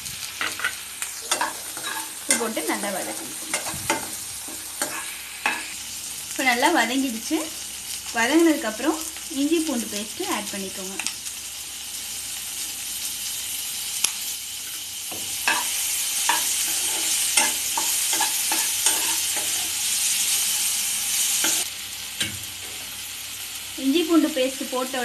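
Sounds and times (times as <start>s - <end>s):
food sizzling in oil: 0.0s - 25.0s
spatula clicking and scraping pan: 0.4s - 5.7s, 14.6s - 19.8s.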